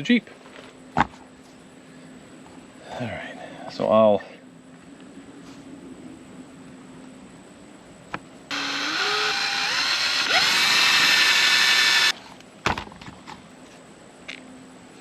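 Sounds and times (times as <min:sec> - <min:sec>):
electric drill drilling: 0:08.5 - 0:12.1.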